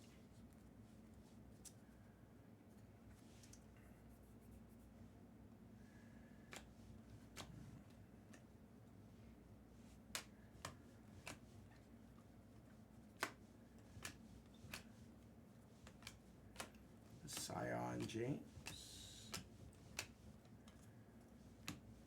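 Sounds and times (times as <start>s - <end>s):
faint steady hum: 0.0s - 22.0s
cards flipped with sharp clicks: 15.8s - 20.8s.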